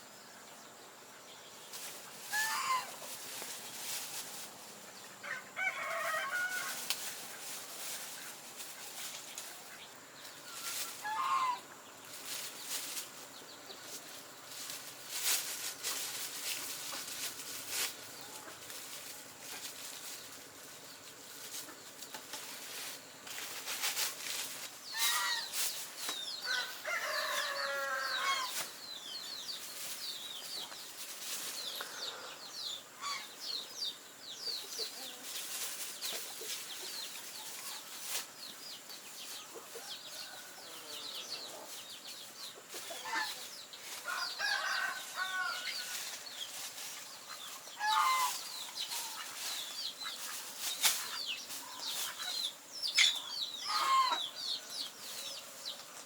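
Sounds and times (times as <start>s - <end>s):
chickens clucking: 1.0s - 56.0s
rustling: 1.6s - 32.0s, 34.6s - 54.0s.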